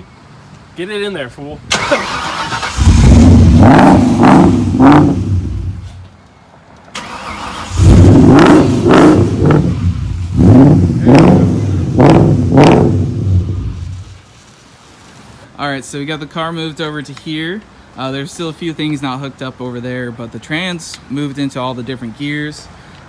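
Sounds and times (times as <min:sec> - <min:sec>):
car engine revving: 0:01.7 - 0:06.1, 0:07.0 - 0:14.2.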